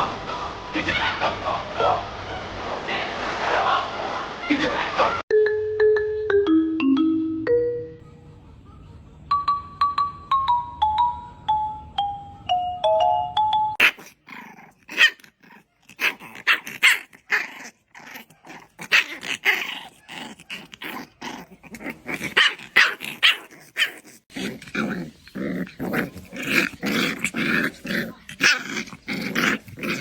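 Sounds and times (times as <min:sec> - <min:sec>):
marimba-like jingle: 0:05.3 - 0:08.0, 0:09.3 - 0:13.8
puppy barking and growling: 0:13.8 - 0:30.0.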